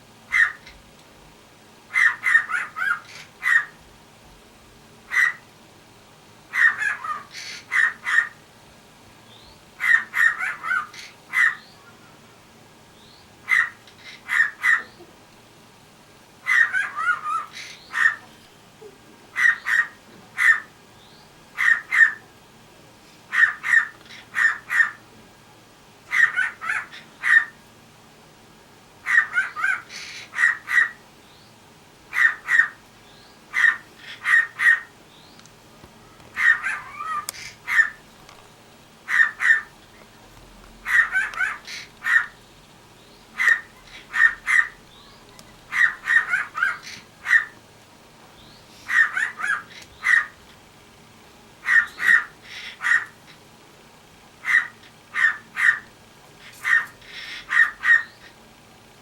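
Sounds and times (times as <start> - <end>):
cockatiel bark-like calls: 0.3 - 0.8, 1.9 - 3.9, 5.1 - 5.5, 6.5 - 8.4, 9.8 - 12.2, 13.4 - 15.1, 16.4 - 18.4, 19.3 - 20.8, 21.5 - 22.3, 23.3 - 25.1, 26.1 - 27.6, 29.0 - 31.0, 32.1 - 32.8, 33.5 - 35.0, 36.1 - 38.0, 39.0 - 39.8, 40.8 - 42.4, 43.3 - 47.6, 48.7 - 50.4, 51.6 - 53.4, 54.4 - 58.4.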